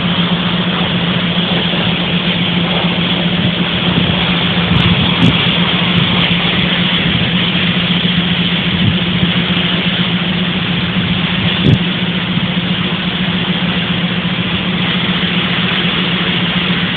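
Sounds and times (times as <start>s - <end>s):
heavy machinery running: 0.0s - 16.9s.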